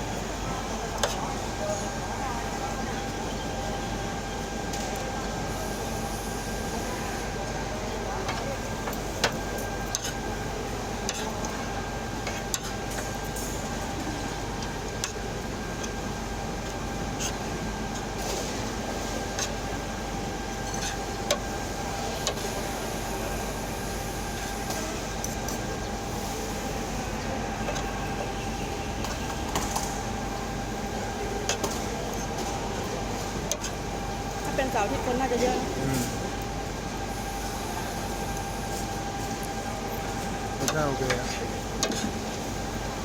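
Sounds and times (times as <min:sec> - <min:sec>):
eatery background hum: 0:00.0 - 0:43.0.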